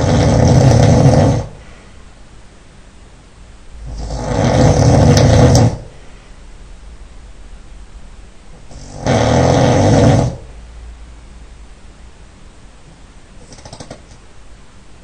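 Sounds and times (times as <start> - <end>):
man snoring loudly: 0.0 - 1.6, 3.8 - 5.9, 8.7 - 10.5.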